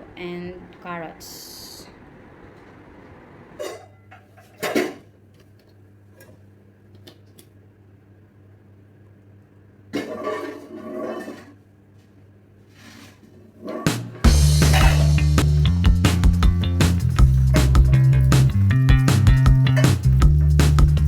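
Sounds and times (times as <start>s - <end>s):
low steady hum: 0.0s - 4.2s
kitchenware clattering: 3.6s - 5.1s, 10.0s - 11.6s.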